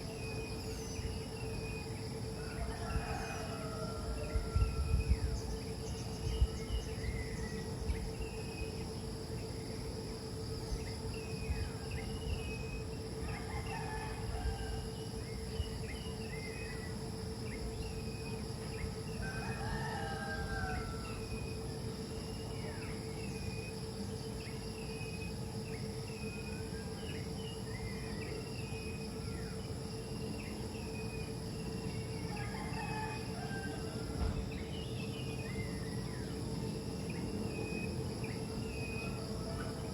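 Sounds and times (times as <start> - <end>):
insect drone: 0.0 - 39.9
distant rooster crowing: 2.3 - 5.5, 13.2 - 15.2, 18.6 - 21.6, 31.3 - 36.4, 37.8 - 39.9.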